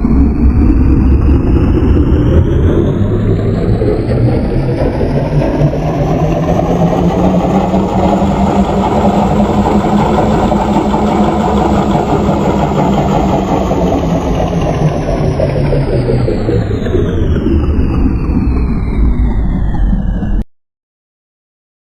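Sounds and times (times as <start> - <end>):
outboard motor running: 0.0 - 20.4.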